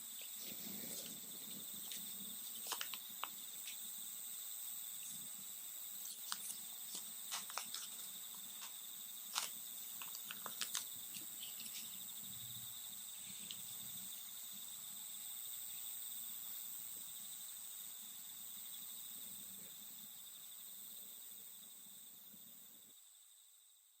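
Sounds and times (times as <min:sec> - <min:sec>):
cicadas singing: 0:00.0 - 0:23.9.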